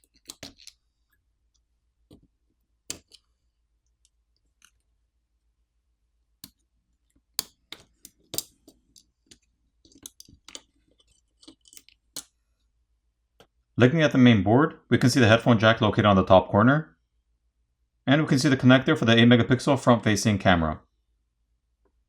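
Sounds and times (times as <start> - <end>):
small tools clicking on phone parts: 0.0 - 0.8, 2.9 - 3.3, 7.4 - 12.3.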